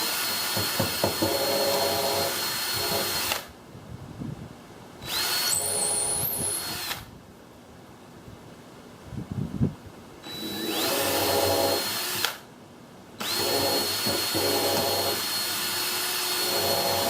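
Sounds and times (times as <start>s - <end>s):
electric drill boring plywood: 0.0s - 3.5s, 5.0s - 7.1s, 10.3s - 12.4s, 13.2s - 17.0s.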